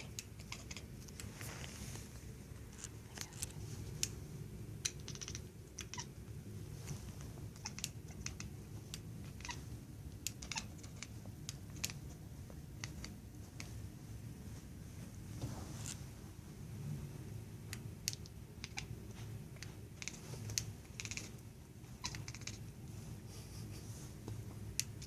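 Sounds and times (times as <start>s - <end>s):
cat chirping: 0.0s - 1.2s, 2.8s - 4.1s, 4.8s - 12.1s, 12.7s - 13.6s, 18.0s - 19.0s, 19.6s - 22.7s.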